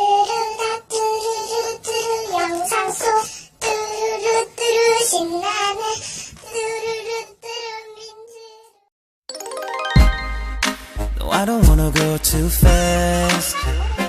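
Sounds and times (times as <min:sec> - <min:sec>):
child singing in a high voice: 0:00.0 - 0:08.9.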